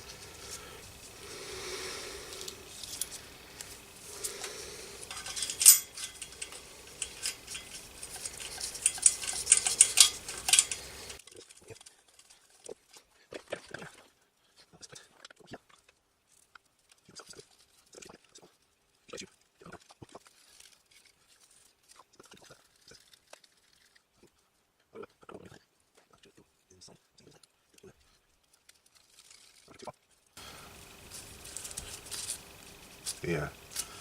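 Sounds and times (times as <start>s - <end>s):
background hiss: 0.0s - 34.0s
metallic clinks and clicks: 2.3s - 12.7s.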